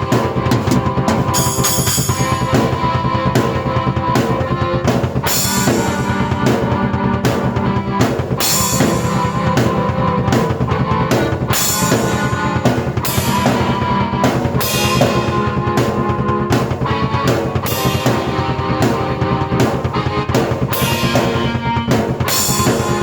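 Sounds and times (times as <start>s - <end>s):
cymbal crash: 0.0s - 3.1s
bass drum and snare: 0.0s - 23.0s
held keyboard notes: 0.0s - 23.0s.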